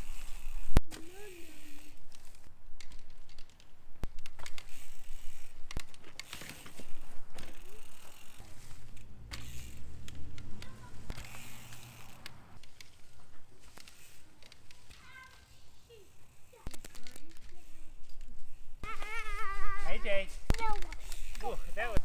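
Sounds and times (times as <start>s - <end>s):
bicycle hub ratchet ticking: 0.0s - 13.0s, 20.5s - 22.0s.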